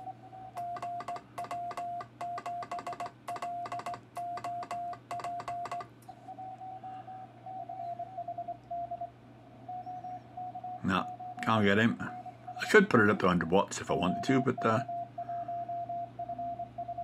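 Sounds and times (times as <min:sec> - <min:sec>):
morse code sidetone beeps: 0:00.6 - 0:05.9, 0:10.8 - 0:17.0
higher-pitched morse signal: 0:10.8 - 0:16.2.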